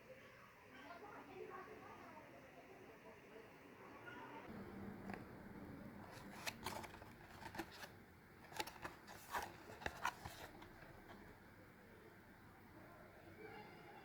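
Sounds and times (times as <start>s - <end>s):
light clicks and rustles: 6.1s - 11.2s.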